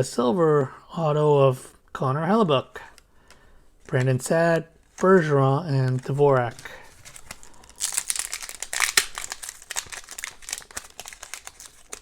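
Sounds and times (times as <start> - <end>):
foil wrapper crinkling: 5.8 - 12.0.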